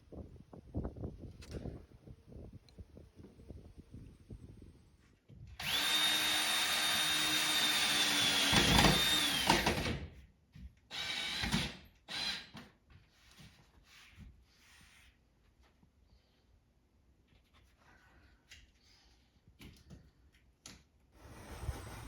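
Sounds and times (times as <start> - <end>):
electric drill whining: 5.6 - 10.0, 10.9 - 12.5.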